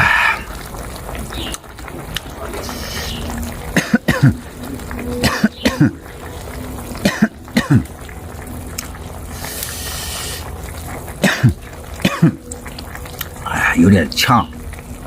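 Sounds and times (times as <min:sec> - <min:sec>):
man coughing: 0:03.8 - 0:04.4, 0:05.2 - 0:06.0, 0:07.1 - 0:07.9, 0:11.2 - 0:12.4.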